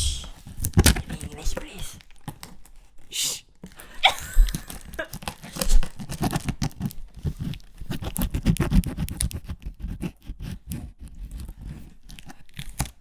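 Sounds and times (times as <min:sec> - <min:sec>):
cardboard box tearing and crinkling: 0:00.4 - 0:01.8, 0:04.5 - 0:09.6.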